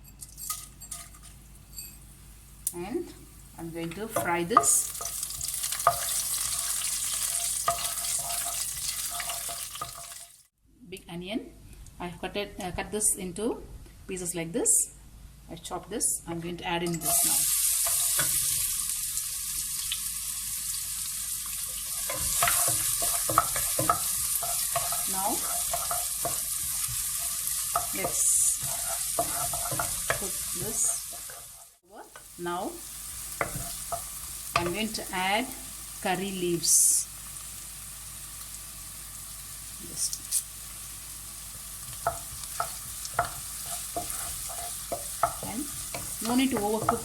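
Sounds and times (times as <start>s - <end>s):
onion sizzling in oil: 0.8s - 10.5s, 16.8s - 47.0s
utensil stirring and knocking in pan: 3.9s - 10.4s, 17.0s - 18.8s, 21.6s - 32.4s, 33.0s - 35.1s, 41.8s - 47.0s.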